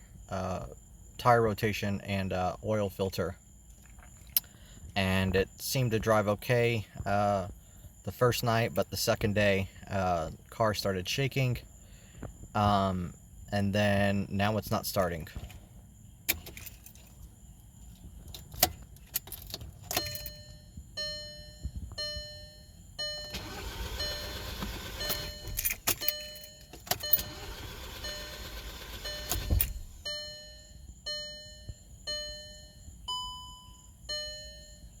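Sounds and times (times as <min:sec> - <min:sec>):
car warning chime beeping: 0:19.9 - 0:35.0
car starter whirring: 0:22.0 - 0:30.7.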